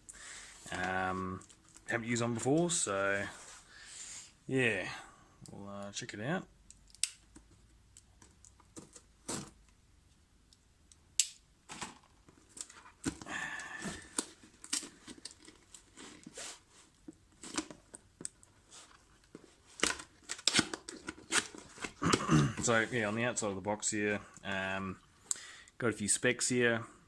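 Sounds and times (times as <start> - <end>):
packaging tearing and crinkling: 19.7 - 22.4.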